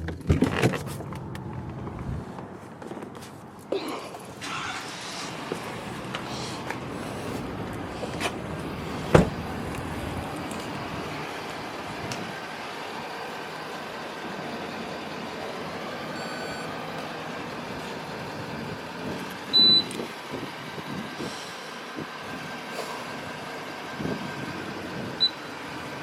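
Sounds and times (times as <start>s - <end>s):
road and engine noise: 0.0s - 26.0s
brief high beep: 19.6s - 19.9s.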